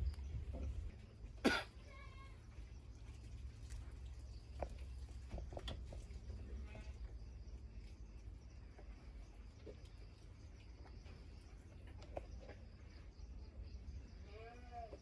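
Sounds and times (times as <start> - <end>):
goat coughing: 1.4 - 1.9.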